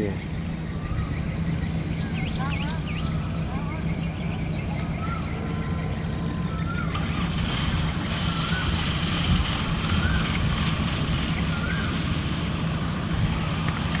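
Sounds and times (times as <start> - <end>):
combine harvester engine hum: 0.0 - 14.0.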